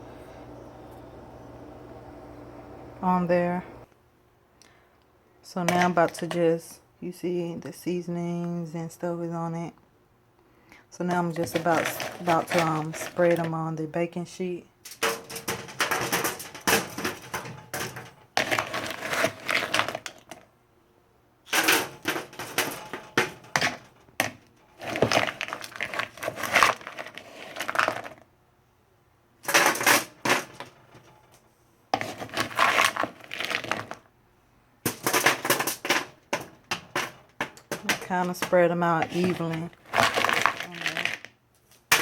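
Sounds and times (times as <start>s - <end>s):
squash cubes rattling on foil: 11.3s - 13.8s, 14.8s - 20.5s, 21.5s - 28.3s, 29.4s - 34.1s, 34.8s - 42.0s.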